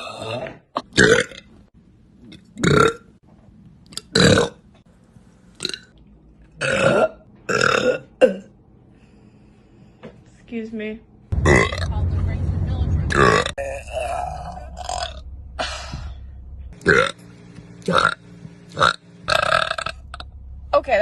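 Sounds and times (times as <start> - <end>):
woman burping loudly: 0.0 - 1.5, 6.6 - 8.5, 13.1 - 15.8.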